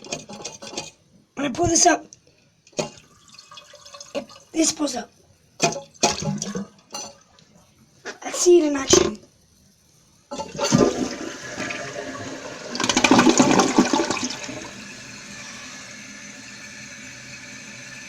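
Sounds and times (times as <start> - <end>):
toilet flushing: 2.8 - 5.0, 5.6 - 9.1, 10.3 - 18.0
water rushing as tank refills: 10.4 - 18.0.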